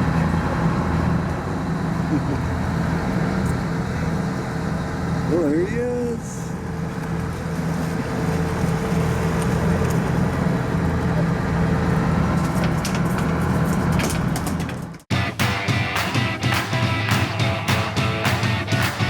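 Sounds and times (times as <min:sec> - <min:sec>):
boat engine droning: 0:00.0 - 0:14.0, 0:15.1 - 0:19.0
rock music with guitar: 0:15.1 - 0:19.0.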